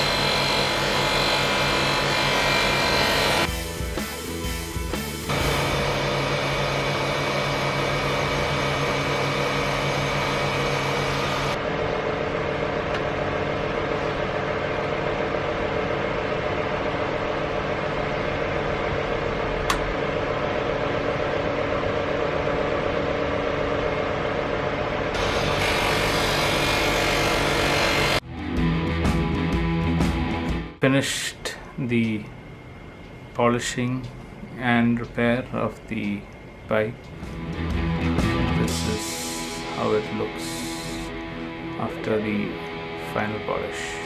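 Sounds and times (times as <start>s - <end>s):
polishing wheel motor hum: 0.0s - 11.6s, 24.6s - 28.2s.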